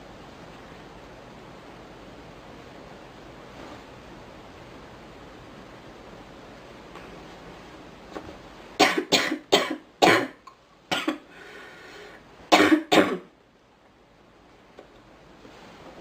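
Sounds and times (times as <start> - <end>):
girl coughing: 8.8 - 11.2, 12.5 - 13.3.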